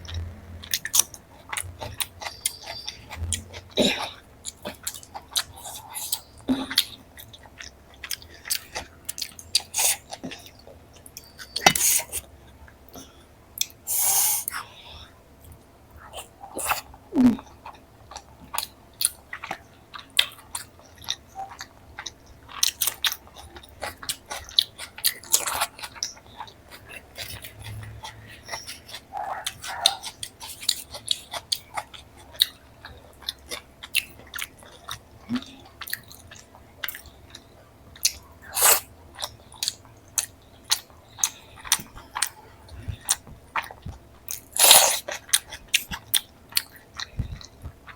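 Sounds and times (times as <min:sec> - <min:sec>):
chewing and biting food: 0:00.0 - 0:12.2, 0:16.0 - 0:47.9.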